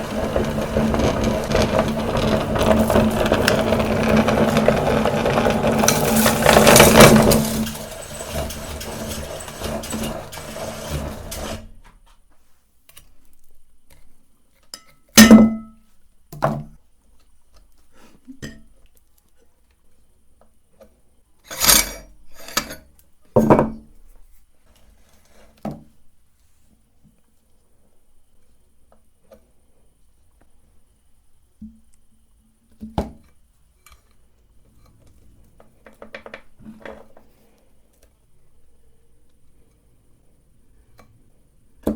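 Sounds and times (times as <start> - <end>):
electric meat grinder running: 0.0 - 11.6.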